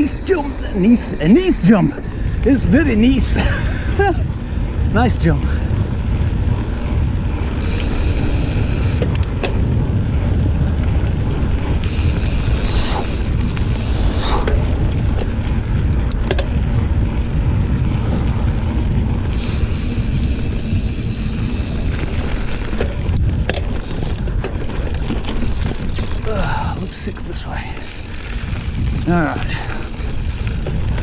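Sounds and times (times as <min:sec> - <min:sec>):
bike rattling over bumps: 0:00.0 - 0:31.0
mountain bike rolling on dirt: 0:00.0 - 0:31.0
wind rumble on microphone: 0:00.0 - 0:31.0.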